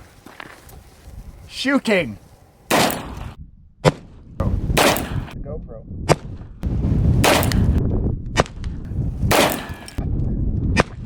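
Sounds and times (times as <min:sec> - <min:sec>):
revolver shots: 0:02.7 - 0:04.1.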